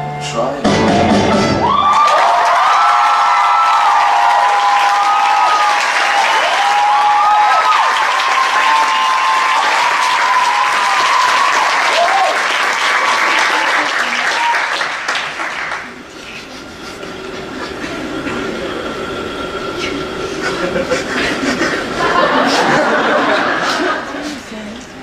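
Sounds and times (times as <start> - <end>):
audience applauding and cheering: 1.1 - 24.4.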